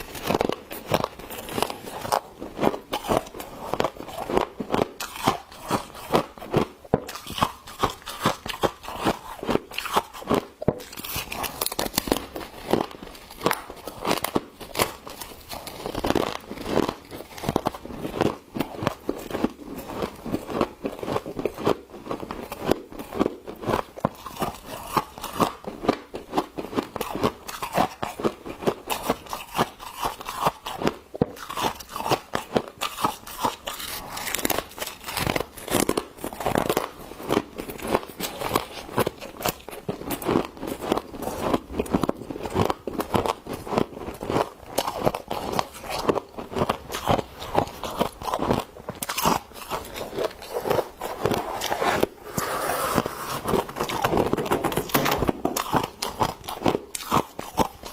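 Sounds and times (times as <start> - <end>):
frost crunching: 44.2 - 57.7.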